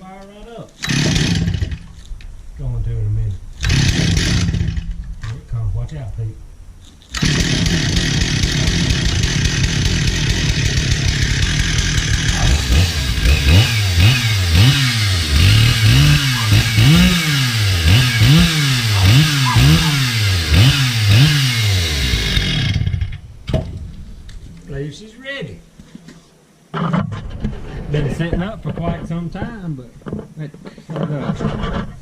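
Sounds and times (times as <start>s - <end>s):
chainsaw engine revving: 0.8s - 2.0s, 3.6s - 5.0s, 7.1s - 23.2s.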